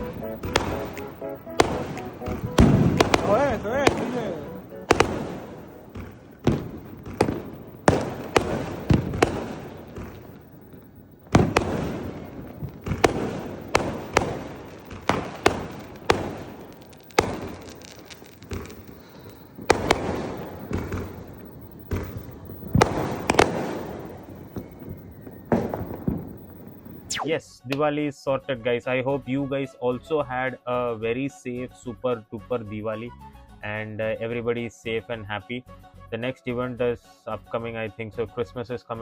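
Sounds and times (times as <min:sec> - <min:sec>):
firecrackers banging: 0:00.0 - 0:27.4.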